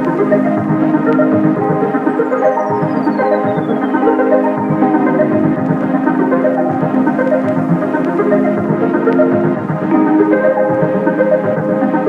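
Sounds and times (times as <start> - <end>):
electronic synthesizer music: 0.0 - 12.0
falling whistle-like tone: 2.1 - 5.6.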